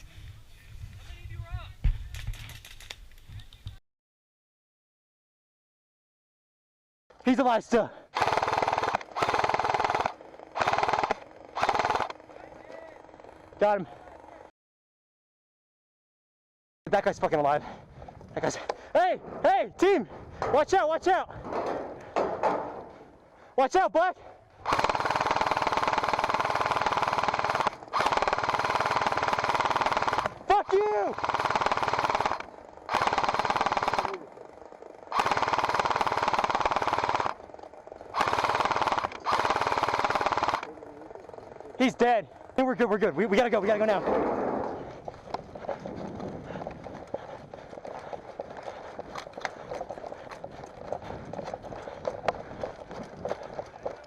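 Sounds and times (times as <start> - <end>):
airsoft gun firing bursts: 8.1 - 13.5, 24.6 - 41.6
sharp clicks: 8.2 - 12.2, 24.6 - 34.2, 35.1 - 40.7
running footsteps: 44.6 - 54.0.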